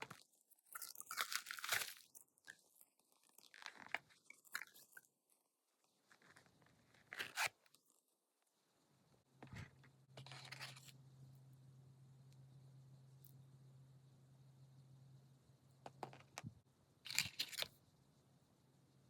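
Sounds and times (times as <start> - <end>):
packaging crinkling and rustling: 17.1 - 17.7.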